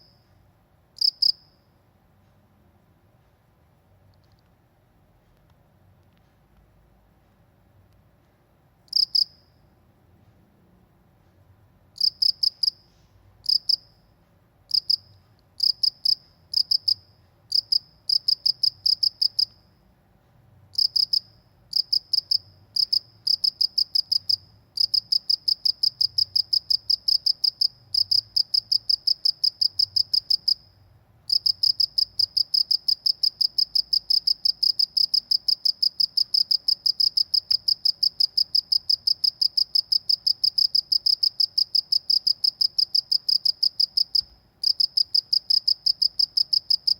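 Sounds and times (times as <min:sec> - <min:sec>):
cricket chirping: 0:01.0 - 0:01.7, 0:08.9 - 0:09.6, 0:12.0 - 0:14.1, 0:14.7 - 0:19.8, 0:20.7 - 0:46.9.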